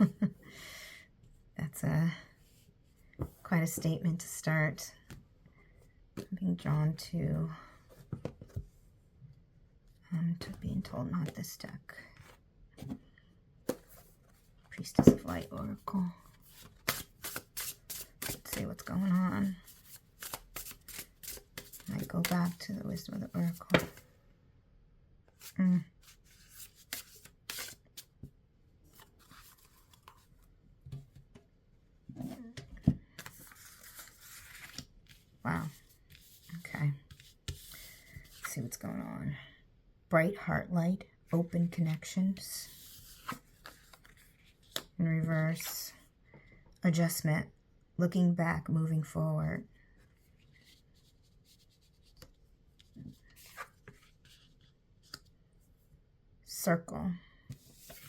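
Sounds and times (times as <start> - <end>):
cards rustling and sliding: 16.3 - 24.1, 25.3 - 28.2, 28.9 - 30.4, 33.1 - 38.5, 42.7 - 44.9, 50.5 - 55.3, 57.5 - 58.0.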